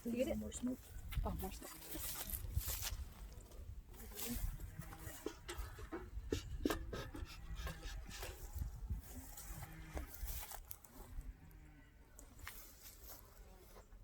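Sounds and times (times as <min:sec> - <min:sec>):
beehive equipment clicking and scraping: 0:03.9 - 0:10.8.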